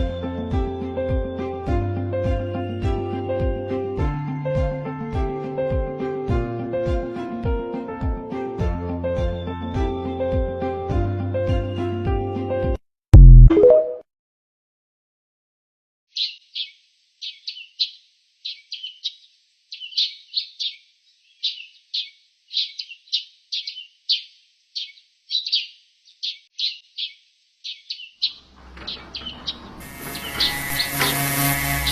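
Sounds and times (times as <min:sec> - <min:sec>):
bird chirping: 0:16.1 - 0:31.9.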